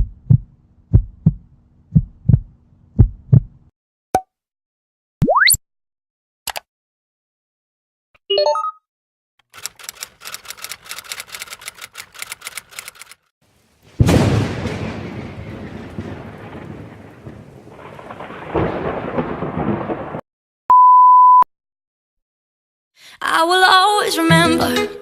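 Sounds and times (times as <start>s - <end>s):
rapid even clicking: 9.4s - 13.3s
thunderclap: 13.8s - 20.2s
censor bleep tone: 20.7s - 21.5s.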